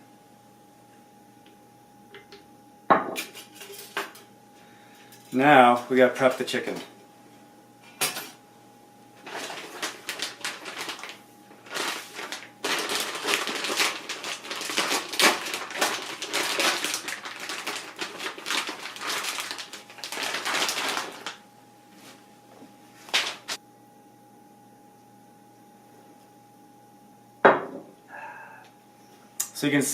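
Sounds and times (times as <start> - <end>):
plastic packaging crinkling: 9.2 - 21.4, 23.0 - 23.6.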